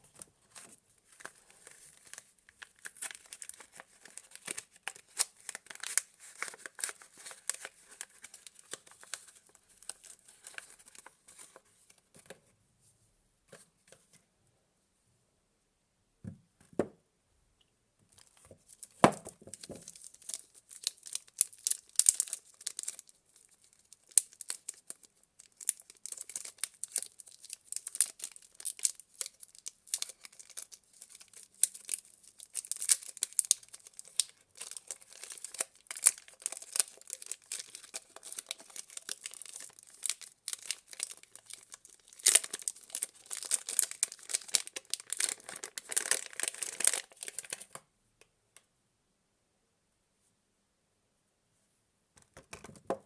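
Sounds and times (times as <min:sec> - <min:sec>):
packaging crinkling and tearing: 0:00.0 - 0:11.6, 0:18.2 - 0:47.8.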